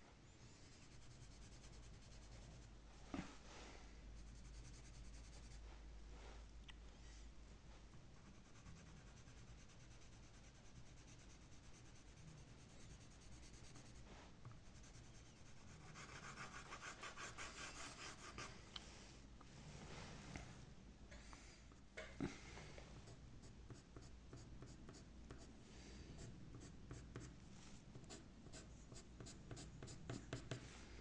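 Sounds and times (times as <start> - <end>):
pencil scratching on paper: 0.6 - 2.7, 4.2 - 5.6, 8.1 - 18.5, 23.0 - 25.5, 26.2 - 27.3, 28.0 - 30.6.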